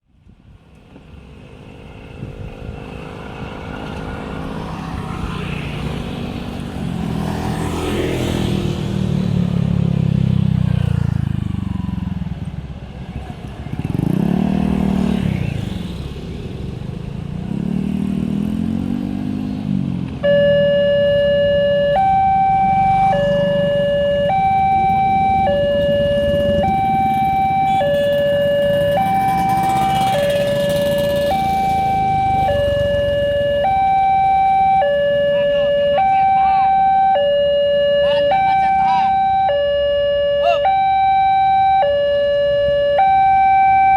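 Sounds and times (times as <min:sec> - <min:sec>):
road vehicles passing: 0:00.0 - 0:43.9
two-tone level crossing alarm: 0:20.2 - 0:43.9.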